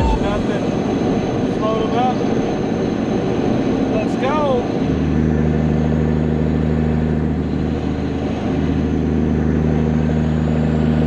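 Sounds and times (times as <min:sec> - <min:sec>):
diesel truck engine droning: 0:00.0 - 0:02.1.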